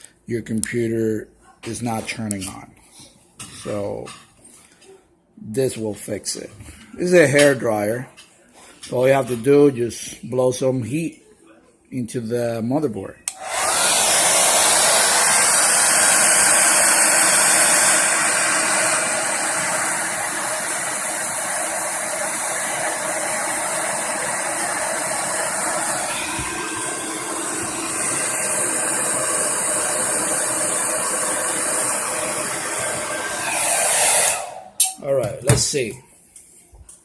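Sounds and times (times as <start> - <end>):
hair dryer blowing: 13.3 - 35.7.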